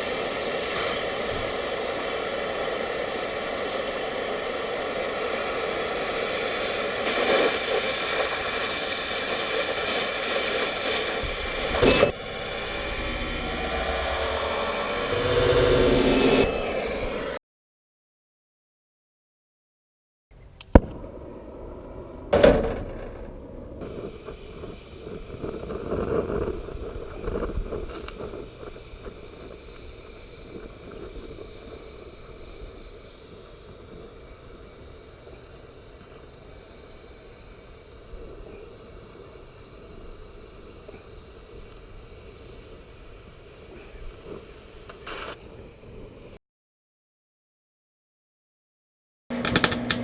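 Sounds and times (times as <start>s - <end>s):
welding hiss: 0.0s - 16.8s, 23.8s - 46.4s.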